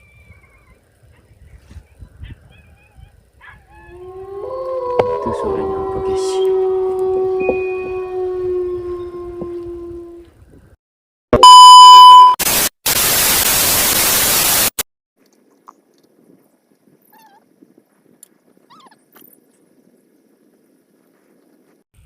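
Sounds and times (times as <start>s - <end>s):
low drawn-out tone: 3.9s - 10.2s
loud electronic beep: 11.4s - 12.4s
loud hissing static: 12.4s - 14.8s.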